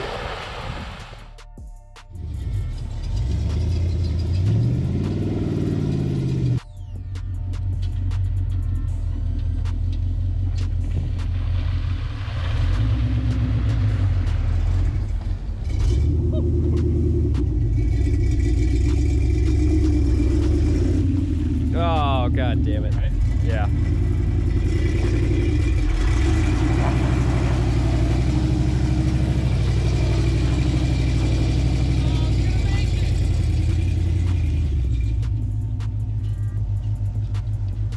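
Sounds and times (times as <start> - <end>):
car engine droning: 0.0 - 37.9.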